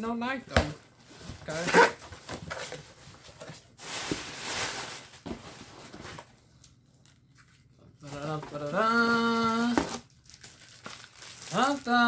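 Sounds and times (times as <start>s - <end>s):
packaging tearing and rustling: 3.6s - 6.3s, 9.6s - 12.0s.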